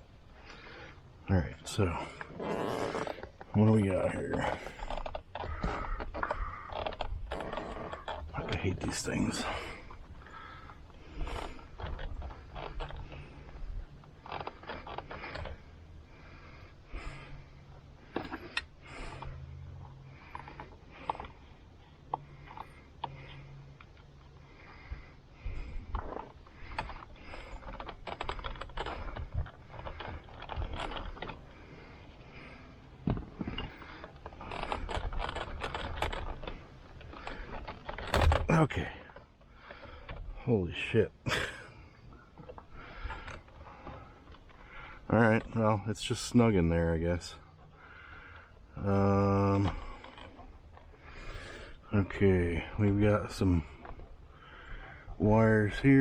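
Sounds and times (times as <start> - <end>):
screwdriver clicking and scraping plastic: 33.0 - 38.6.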